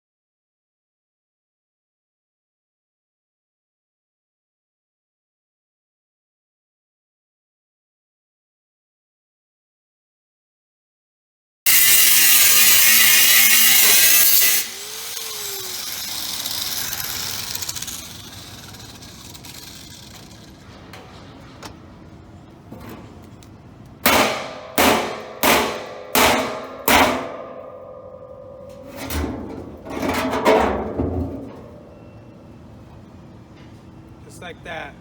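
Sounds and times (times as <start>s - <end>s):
angle grinder winding down: 11.7s - 20.6s
hammer striking steel drum lid: 24.0s - 32.2s.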